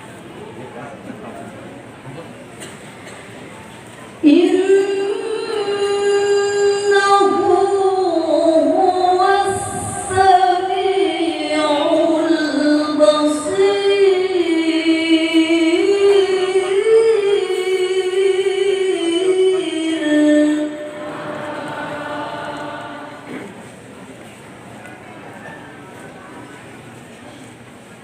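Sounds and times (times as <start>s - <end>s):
high voice chanting recitation: 4.2s - 23.6s.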